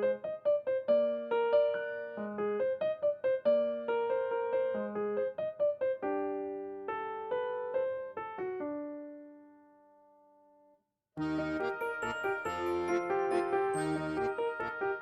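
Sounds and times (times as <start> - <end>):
piano melody: 0.0 - 10.3, 11.2 - 15.0.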